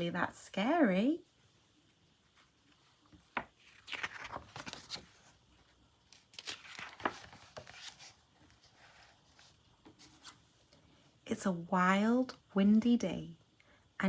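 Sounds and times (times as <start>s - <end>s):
paper pages turning: 3.1s - 10.4s.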